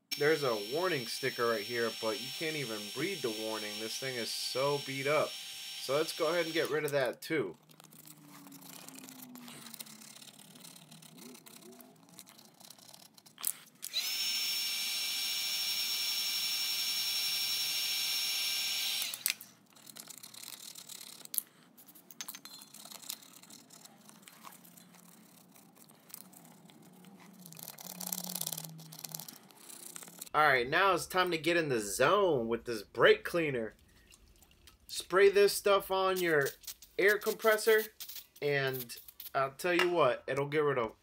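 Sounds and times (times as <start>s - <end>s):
heat gun fan whine: 0.0s - 6.9s, 13.8s - 19.5s
faint scraping and handling: 7.0s - 13.8s, 19.7s - 30.3s.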